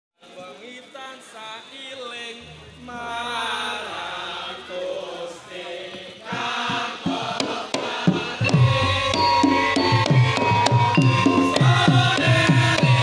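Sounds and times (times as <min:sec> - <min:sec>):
gamelan ensemble music: 0:02.4 - 0:05.0, 0:08.4 - 0:13.0
drum strokes: 0:02.4 - 0:13.0.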